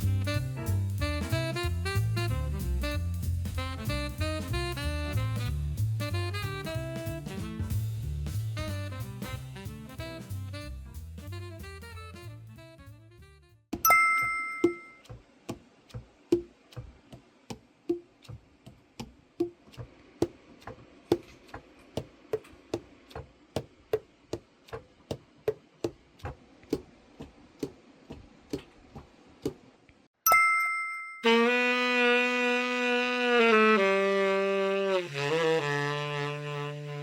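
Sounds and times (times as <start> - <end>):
chime ringing: 13.9 - 15.0, 30.3 - 31.3.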